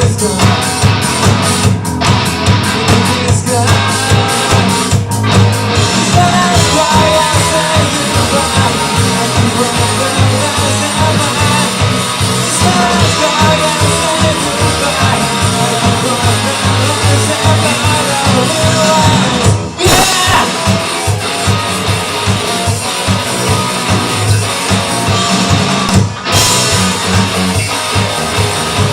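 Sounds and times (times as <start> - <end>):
person singing: 0.0 - 0.9, 2.8 - 4.9, 5.9 - 20.7
live rock band playing: 0.0 - 28.9.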